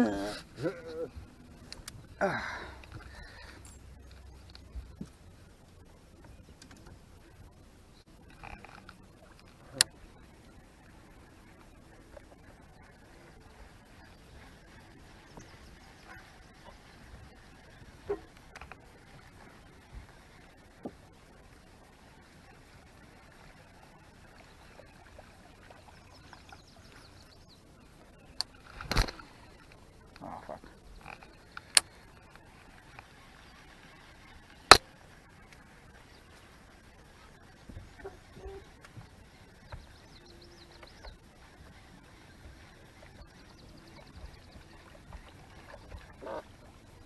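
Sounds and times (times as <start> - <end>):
light clicks: 1.2 - 5.2, 28.0 - 33.7.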